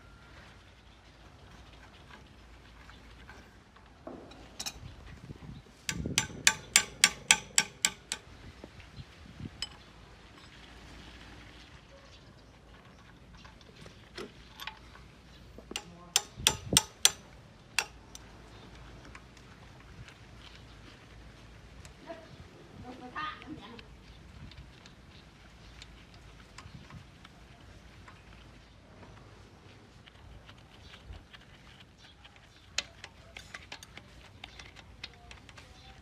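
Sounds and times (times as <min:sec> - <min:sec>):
sharp ringing taps: 0:05.9 - 0:08.3, 0:15.7 - 0:17.2, 0:17.8 - 0:18.2.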